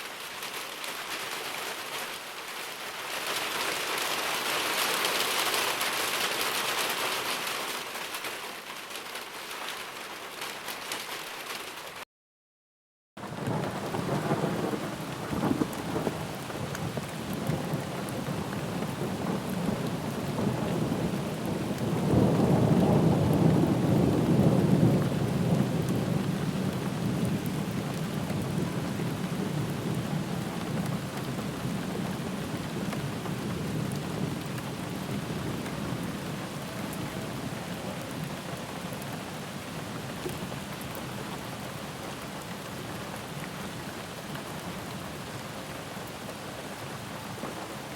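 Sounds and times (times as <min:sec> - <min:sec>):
steady rain: 0:00.0 - 0:12.0, 0:13.2 - 0:47.9
rolling thunder: 0:13.3 - 0:38.8.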